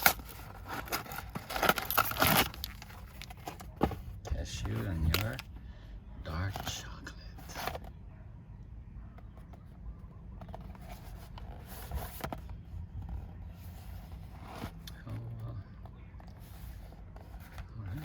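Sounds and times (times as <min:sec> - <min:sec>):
packaging taps and rustles: 0:00.0 - 0:05.5.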